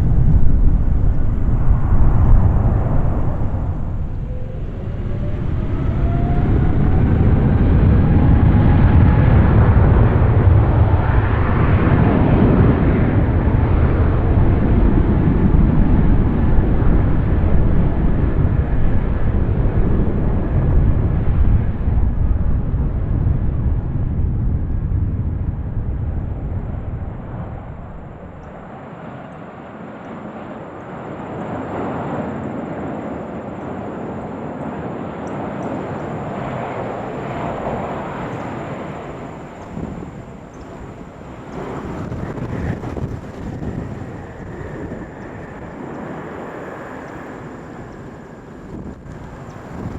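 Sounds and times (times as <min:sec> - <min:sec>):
jet airliner engine roar: 0:00.0 - 0:49.9
jet engine whine rising: 0:00.0 - 0:49.9.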